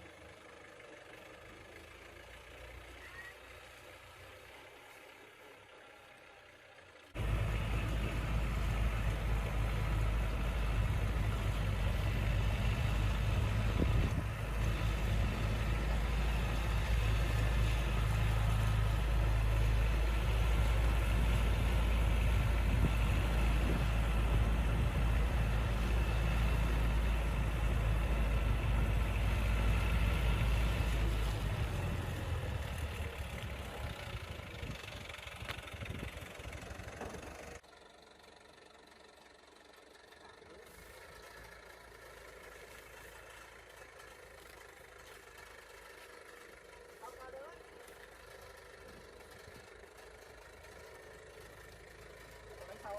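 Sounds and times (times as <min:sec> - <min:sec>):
vehicle engine rumbling: 0:00.0 - 0:52.9.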